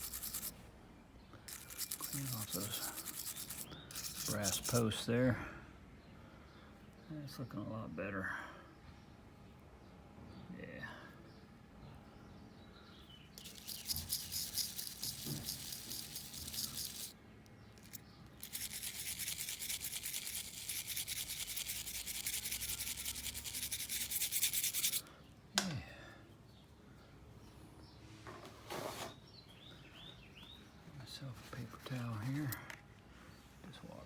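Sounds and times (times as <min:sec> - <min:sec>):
wire brush scrubbing metal: 0:00.0 - 0:00.5, 0:01.5 - 0:05.1, 0:13.4 - 0:17.1, 0:17.8 - 0:25.1.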